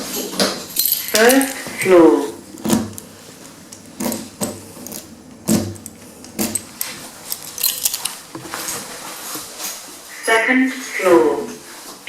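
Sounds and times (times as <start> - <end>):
lift clunks and metallic rattles: 0.0 - 9.3.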